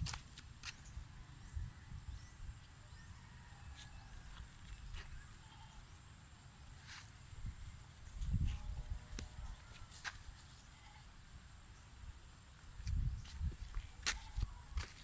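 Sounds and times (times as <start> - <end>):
wind rumble on microphone: 0.0 - 0.2, 0.9 - 3.4, 7.4 - 9.8, 12.7 - 15.0.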